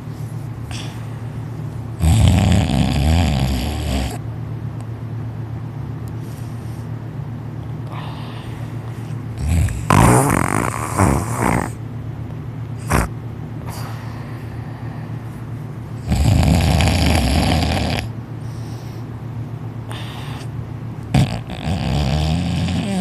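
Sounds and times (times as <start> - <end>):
faint breaths: 0.1 - 1.5, 6.1 - 7.0, 7.8 - 9.9, 12.8 - 15.5, 18.4 - 20.6
loud snoring: 2.0 - 4.2, 9.4 - 11.8, 12.8 - 13.1, 16.0 - 18.1, 21.1 - 23.0.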